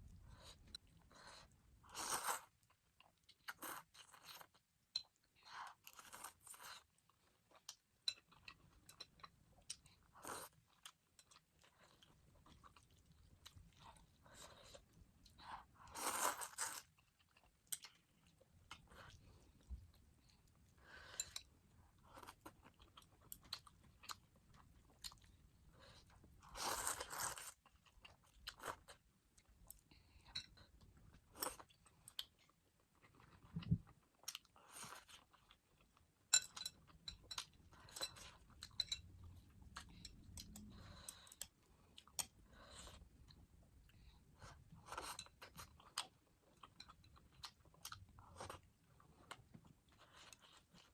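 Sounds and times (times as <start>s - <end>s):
person chewing crunchy food: 44.4s - 50.9s.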